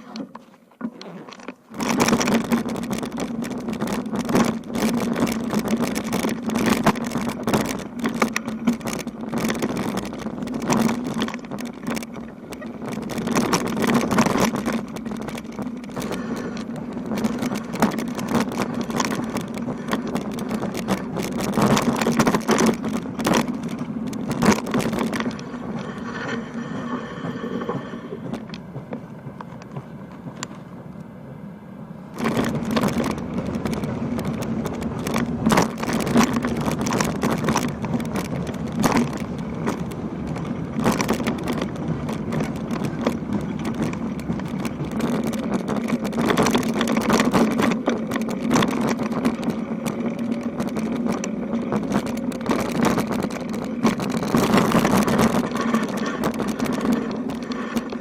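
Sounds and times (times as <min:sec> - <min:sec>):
bicycle tyre noise: 0:00.0 - 0:58.0
bicycle rattling jolts: 0:01.3 - 0:30.7, 0:32.1 - 0:58.0
wind on microphone: 0:32.2 - 0:58.0.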